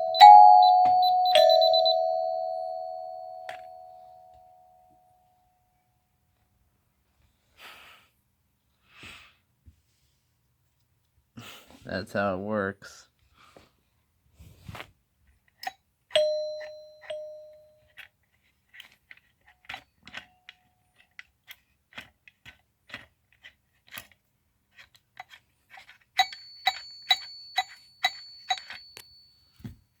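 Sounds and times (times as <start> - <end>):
steady high tone: 0.0 - 4.7
doorbell ringing: 0.0 - 5.1, 16.2 - 17.8, 26.2 - 29.6.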